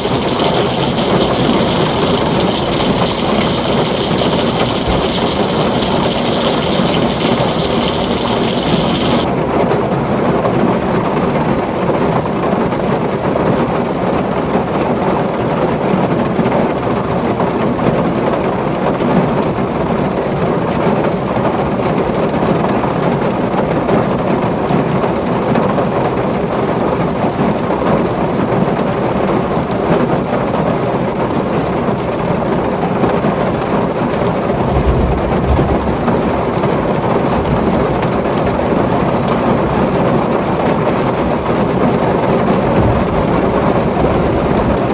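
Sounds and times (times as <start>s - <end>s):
heavy rain on a tin roof: 0.0s - 9.3s
low rumble of thunder: 34.6s - 37.9s, 42.7s - 44.9s.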